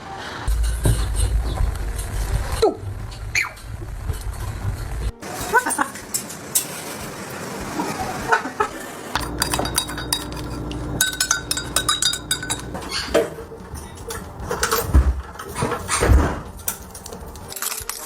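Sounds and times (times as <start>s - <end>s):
hard objects clinking and tapping: 9.2s - 14.8s.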